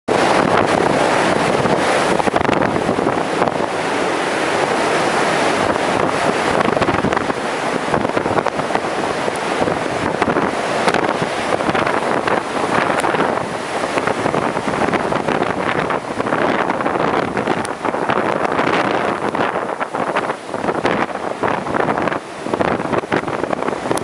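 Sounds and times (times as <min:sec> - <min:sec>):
strong gusty wind: 0:00.1 - 0:24.0.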